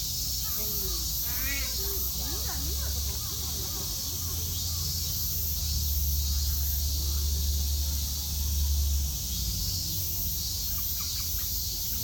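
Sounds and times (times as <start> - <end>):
faint distant voices: 0.0 - 12.0.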